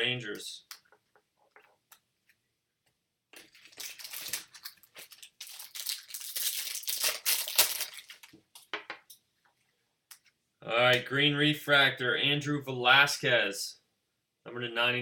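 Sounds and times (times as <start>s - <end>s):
foil wrapper crinkling: 3.4s - 8.7s.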